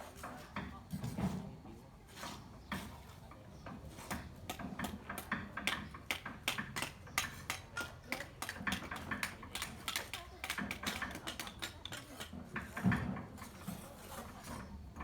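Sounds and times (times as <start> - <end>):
hard objects tapping together: 4.5 - 13.0.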